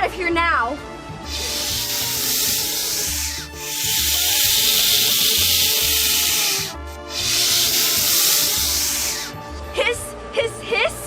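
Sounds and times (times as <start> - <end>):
quiet background music: 0.0 - 11.0
drawn-out snake-like hissing: 1.2 - 9.6.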